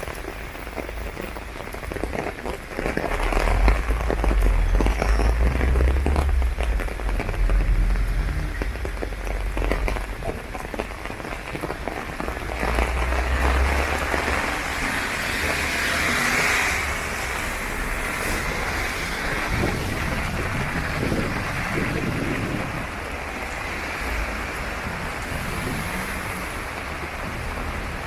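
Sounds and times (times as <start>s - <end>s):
rain on an umbrella: 0.0s - 28.0s
low rumble: 3.0s - 11.5s.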